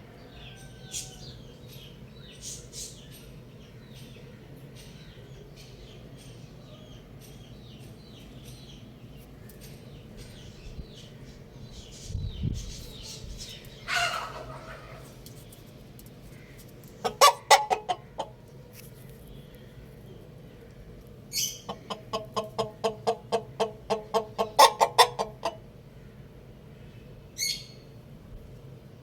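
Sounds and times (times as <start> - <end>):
chicken clucking: 13.9 - 15.2, 17.0 - 18.4, 21.4 - 25.6.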